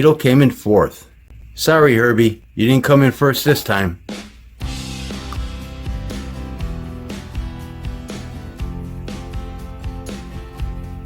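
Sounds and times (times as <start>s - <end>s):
upbeat guitar music with drums: 4.0s - 11.0s.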